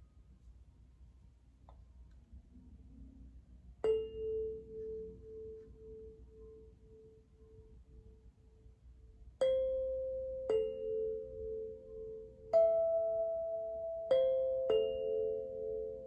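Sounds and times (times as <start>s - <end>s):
tuned metal notes ringing: 3.8s - 16.0s.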